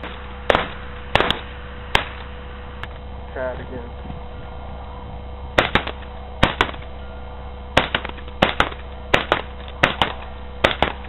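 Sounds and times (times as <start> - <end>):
airsoft pistol shots: 0.0 - 2.3, 5.6 - 6.9, 7.8 - 11.0.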